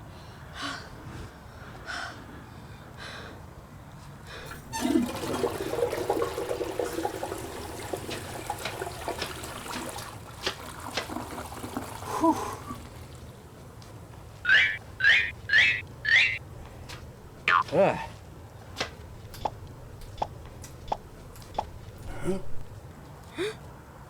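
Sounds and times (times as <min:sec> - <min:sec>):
toilet flushing: 0:04.4 - 0:13.5
short high-pitched sounds: 0:14.5 - 0:16.4.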